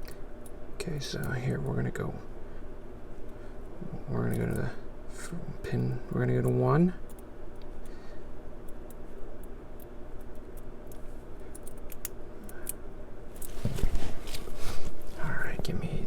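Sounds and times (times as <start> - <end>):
low steady hum: 0.0 - 16.0
rustling: 13.3 - 15.8.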